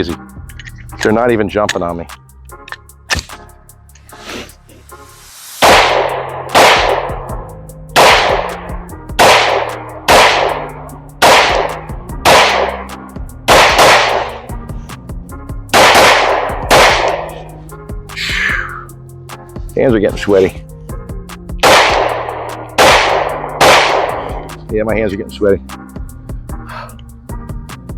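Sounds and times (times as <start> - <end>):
pistol shots with ringing decay: 5.6 - 7.3, 8.0 - 8.6, 9.2 - 12.8, 13.5 - 14.4, 15.8 - 17.4, 21.6 - 24.4.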